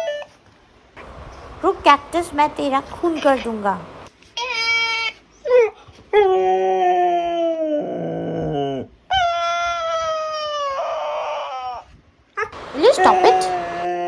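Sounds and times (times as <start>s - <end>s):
dog yelping: 0.0s - 0.4s, 2.9s - 6.5s, 8.4s - 14.0s
dog howling: 4.5s - 11.8s, 12.4s - 14.0s.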